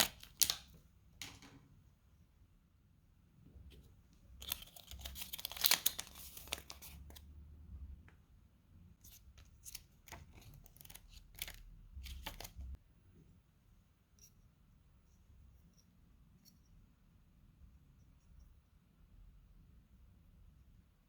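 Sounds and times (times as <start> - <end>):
packaging tearing and crinkling: 0.0 - 0.7, 4.4 - 7.2, 9.6 - 12.6.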